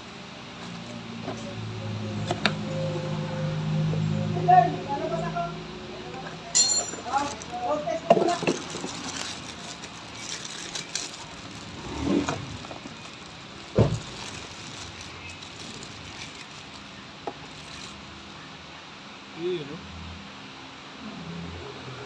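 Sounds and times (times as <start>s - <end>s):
car engine running: 7.0s - 16.2s.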